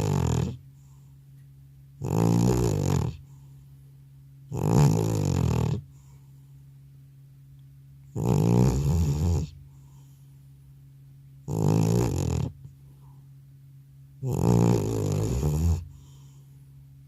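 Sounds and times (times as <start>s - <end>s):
cat snoring: 0.0s - 0.6s, 2.0s - 3.4s, 4.5s - 6.1s, 8.1s - 10.1s, 11.5s - 12.7s, 14.2s - 16.4s.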